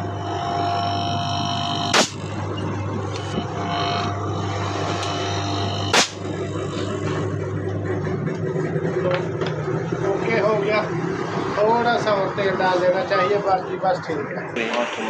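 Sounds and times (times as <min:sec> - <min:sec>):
compressor humming: 0:00.0 - 0:11.4
loud sharp knock: 0:01.9 - 0:02.2, 0:05.9 - 0:06.2.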